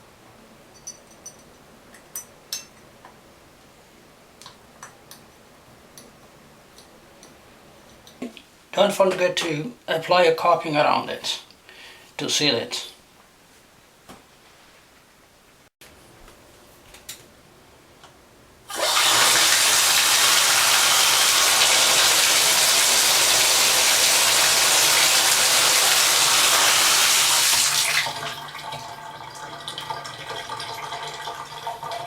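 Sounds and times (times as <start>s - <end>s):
shower water running: 18.7s - 32.0s.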